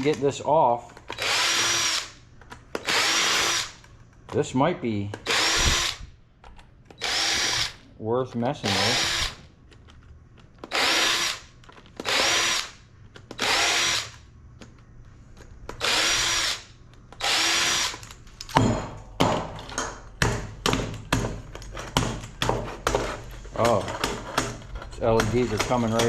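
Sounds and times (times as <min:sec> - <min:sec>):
power drill spinning: 0:01.1 - 0:02.2, 0:02.8 - 0:03.8, 0:05.2 - 0:06.0, 0:07.0 - 0:07.8, 0:08.6 - 0:09.4, 0:10.6 - 0:12.8, 0:13.4 - 0:14.2, 0:15.8 - 0:18.2
sharp knocks and clicks: 0:18.4 - 0:26.0.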